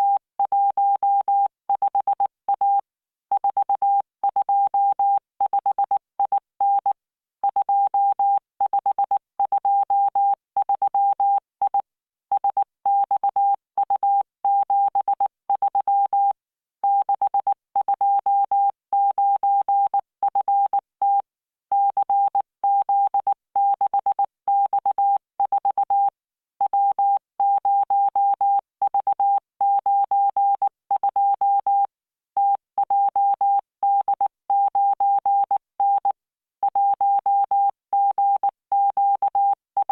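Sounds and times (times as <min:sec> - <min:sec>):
morse code beeps: 0:26.7 - 0:39.9.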